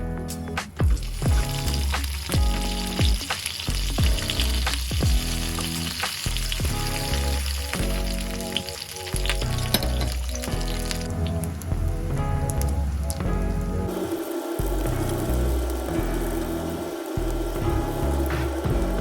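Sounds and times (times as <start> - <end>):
background music with a beat: 0.0 - 11.1, 17.2 - 19.0
food sizzling in a pan: 1.0 - 11.1, 13.9 - 19.0.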